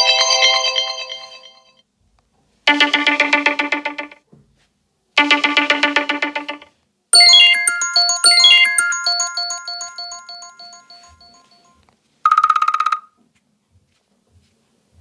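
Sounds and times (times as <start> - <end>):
chiming ringtone arpeggio: 0.0 - 1.7, 2.7 - 4.2, 5.2 - 6.6, 7.2 - 11.6.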